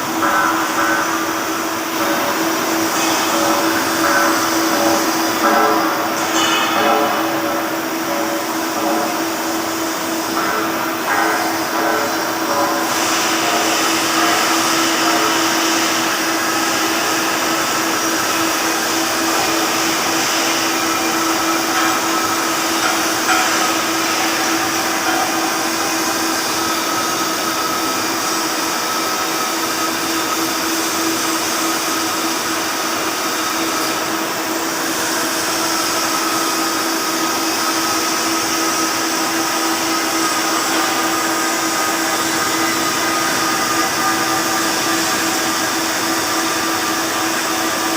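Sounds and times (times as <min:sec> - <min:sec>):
constant electrical hum: 0:00.0 - 0:47.9
welding arc hissing: 0:00.0 - 0:47.9.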